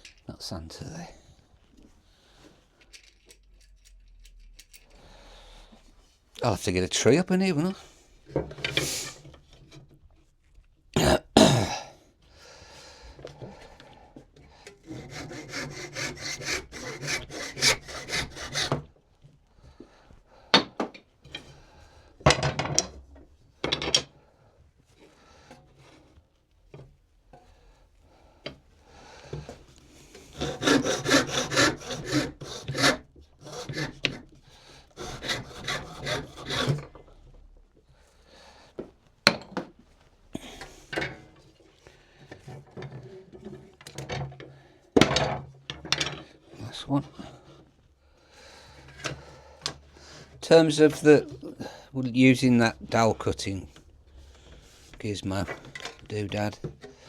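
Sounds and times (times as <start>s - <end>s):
hand saw cutting wood: 14.7s - 19.0s, 29.4s - 37.4s, 48.7s - 57.0s.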